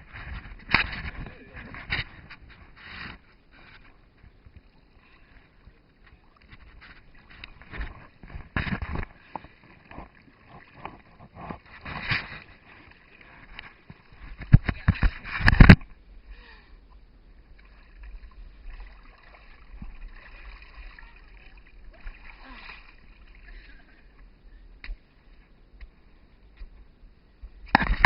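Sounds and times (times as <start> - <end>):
water splashing and sloshing: 0.0 - 16.1, 16.8 - 25.6
steady wash of water: 17.4 - 24.2.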